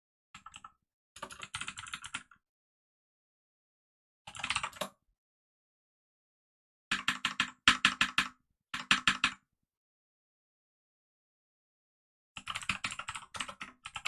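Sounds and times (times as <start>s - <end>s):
computer keyboard typing: 0.4s - 2.4s, 4.3s - 4.9s, 6.9s - 9.4s, 12.4s - 14.0s.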